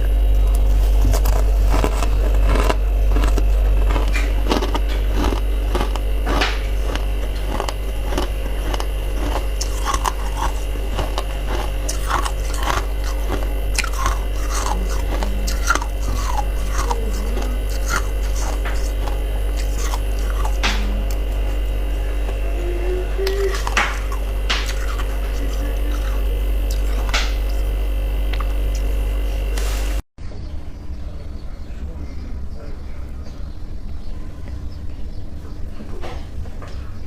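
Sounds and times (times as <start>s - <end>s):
steady low hum: 0.0s - 37.0s
irregular crunching clicks: 0.4s - 21.6s, 23.5s - 27.6s.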